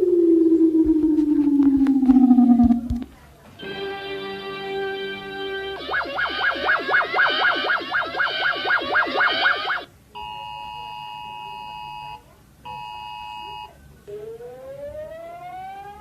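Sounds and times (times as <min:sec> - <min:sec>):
two-tone attention signal: 0:00.0 - 0:03.0, 0:05.4 - 0:14.2
fast warbling alarm tone: 0:00.0 - 0:03.1, 0:05.1 - 0:09.9, 0:14.1 - 0:16.0
siren winding up: 0:00.0 - 0:03.1, 0:05.4 - 0:09.9, 0:14.1 - 0:16.0.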